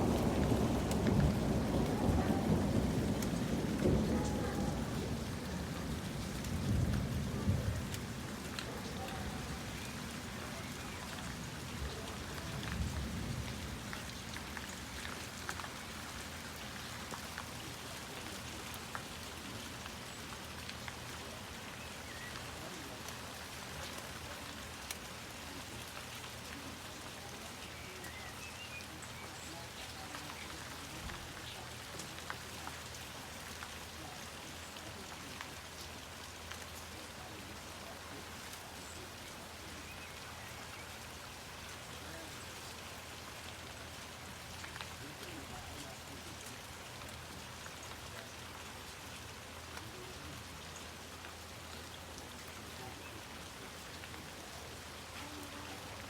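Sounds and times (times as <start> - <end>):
rain falling on plants: 0.0 - 56.0.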